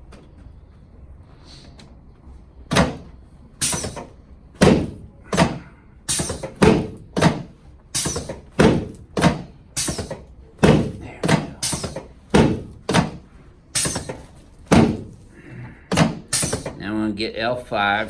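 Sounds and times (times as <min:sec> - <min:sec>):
treatment table thudding: 0:02.7 - 0:15.3, 0:15.9 - 0:16.8.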